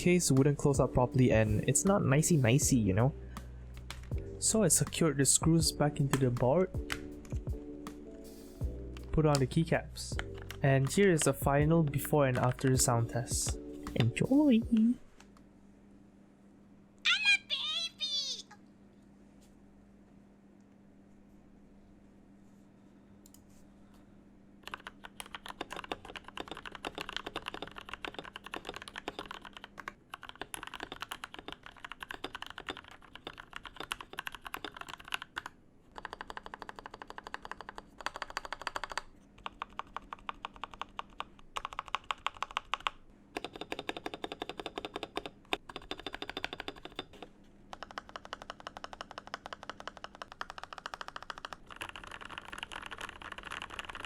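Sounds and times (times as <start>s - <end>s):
mechanical keyboard typing: 10.2s - 13.3s, 24.6s - 54.0s.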